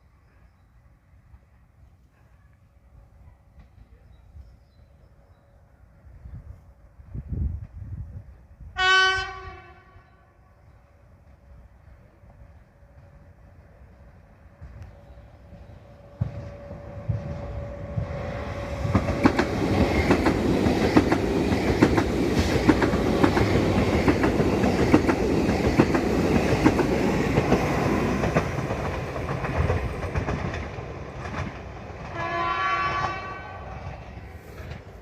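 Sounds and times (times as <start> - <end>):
train horn: 8.7 - 10.7, 32.1 - 33.9
train wheels clicking over rails: 11.2 - 32.4, 33.6 - 35.0.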